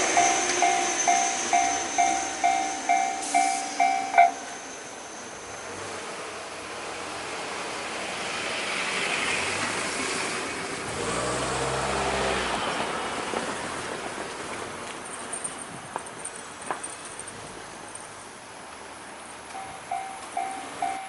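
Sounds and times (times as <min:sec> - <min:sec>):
train running rumble: 0:00.0 - 0:04.9, 0:12.3 - 0:17.0.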